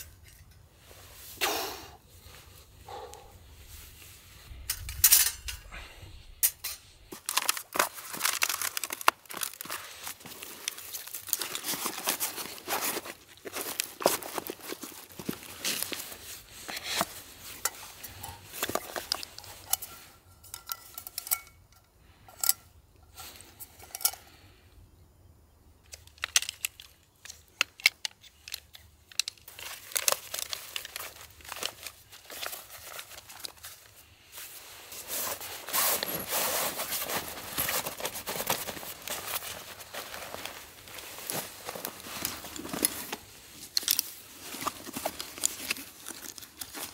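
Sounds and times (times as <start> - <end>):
plastic crinkling and rustling: 7.1 - 20.6, 25.8 - 46.9.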